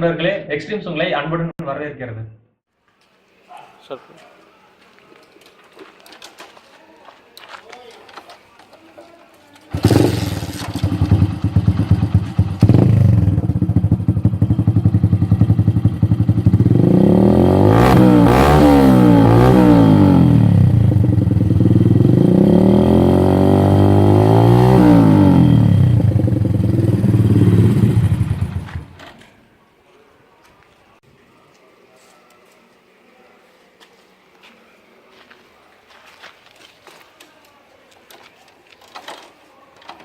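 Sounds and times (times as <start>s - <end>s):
motorcycle engine idling and revving: 9.7s - 29.1s.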